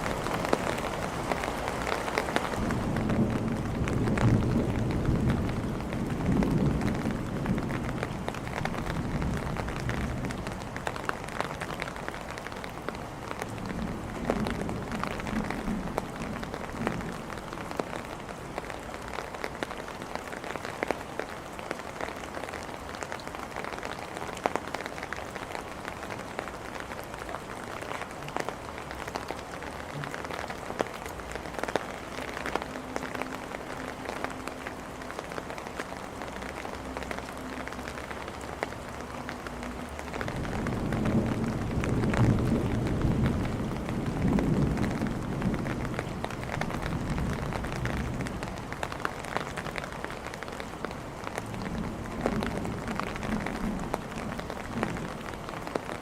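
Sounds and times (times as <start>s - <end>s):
rain on hard surfaces: 0.0s - 56.0s
low rumble of thunder: 2.6s - 10.8s, 13.4s - 17.5s, 39.6s - 49.3s, 51.4s - 55.6s.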